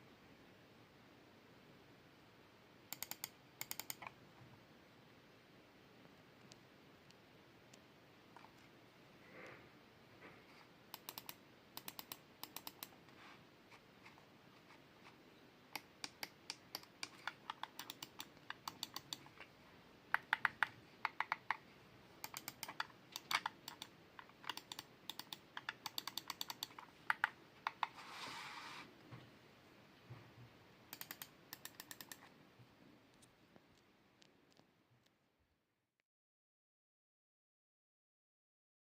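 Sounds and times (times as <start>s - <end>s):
mouse buttons clicking: 2.9s - 4.2s, 10.9s - 13.0s, 15.7s - 19.5s, 20.1s - 21.6s, 22.2s - 28.0s, 30.9s - 32.3s
mouse being handled rustle: 27.7s - 28.9s.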